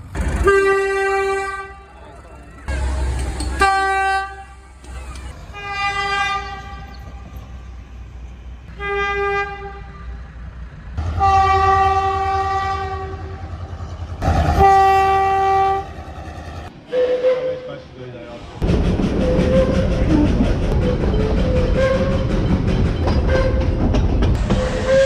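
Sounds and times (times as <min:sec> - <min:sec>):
locomotive engine rumble: 0:00.0 - 0:25.0
locomotive horn blasts: 0:00.4 - 0:01.9, 0:03.6 - 0:04.6, 0:05.5 - 0:06.9, 0:08.7 - 0:10.2, 0:11.0 - 0:13.4, 0:14.5 - 0:16.0.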